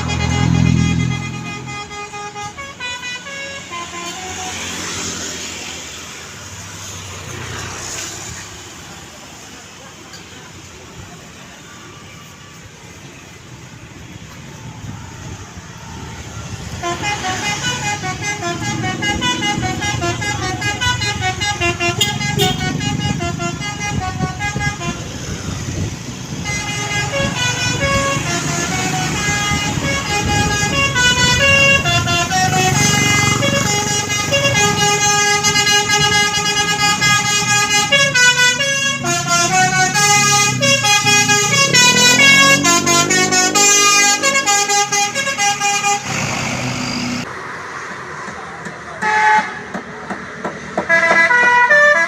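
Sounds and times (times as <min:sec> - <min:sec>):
multi-tone bus horn tune: 0:00.0 - 0:05.6, 0:16.7 - 0:47.3, 0:49.0 - 0:49.7, 0:50.8 - 0:52.0.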